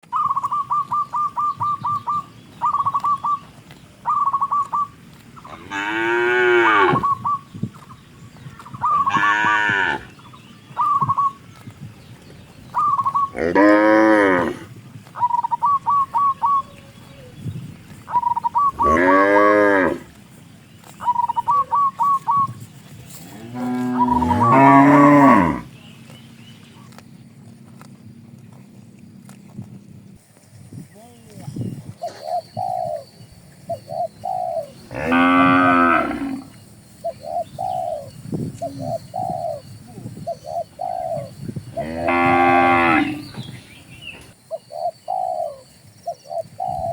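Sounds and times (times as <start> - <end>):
bird high pips: 0.1 - 5.0, 10.2 - 11.5, 12.7 - 13.4, 15.2 - 18.9, 20.9 - 22.6
cattle mooing: 5.4 - 7.0, 9.0 - 10.1, 13.3 - 14.7, 18.8 - 20.1, 23.2 - 25.7, 34.9 - 36.5, 41.8 - 43.4.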